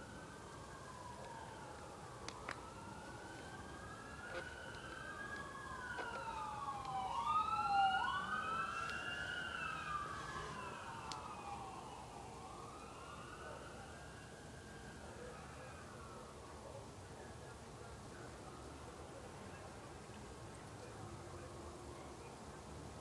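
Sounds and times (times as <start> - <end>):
sirens wailing: 0.0 - 16.5.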